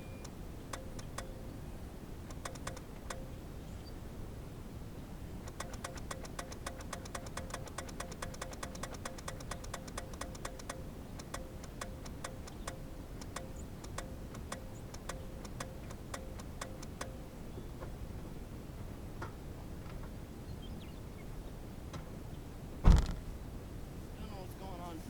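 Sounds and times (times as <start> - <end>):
starter solenoid clicking: 0.0 - 1.6, 2.2 - 3.4, 5.4 - 17.3
faint steady tone: 0.0 - 17.8.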